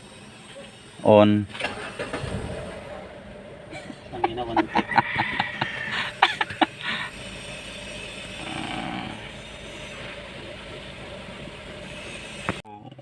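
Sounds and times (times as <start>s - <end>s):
car engine idling: 0.0s - 12.6s.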